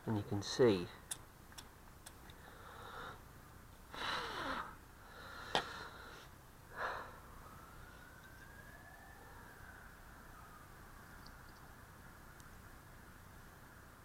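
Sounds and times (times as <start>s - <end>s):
person sniffing and breathing: 2.4s - 3.3s, 3.9s - 7.2s.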